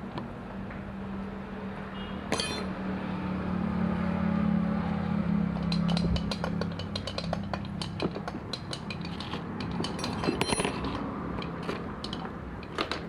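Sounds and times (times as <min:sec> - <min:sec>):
metal tools clinking: 0:02.3 - 0:02.7, 0:05.6 - 0:13.0.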